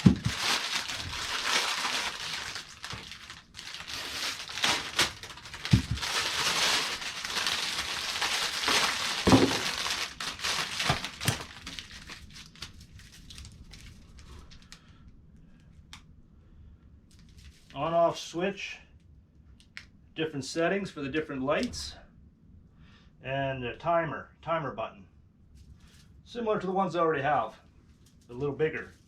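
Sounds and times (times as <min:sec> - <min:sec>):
packaging crinkling and rustling: 0:00.0 - 0:14.9, 0:17.1 - 0:17.8.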